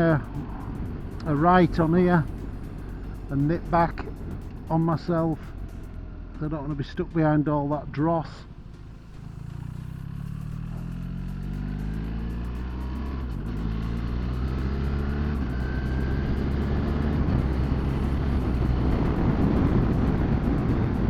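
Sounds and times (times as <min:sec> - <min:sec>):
wind rush: 0:00.0 - 0:05.6, 0:17.2 - 0:21.0
motorcycle engine accelerating: 0:00.0 - 0:06.4, 0:08.4 - 0:21.0.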